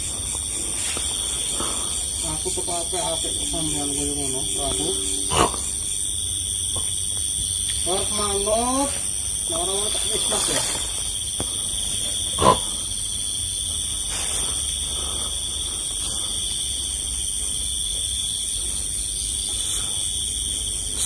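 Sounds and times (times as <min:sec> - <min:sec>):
low hum: 0:00.0 - 0:12.0
night insects trilling: 0:00.0 - 0:21.0.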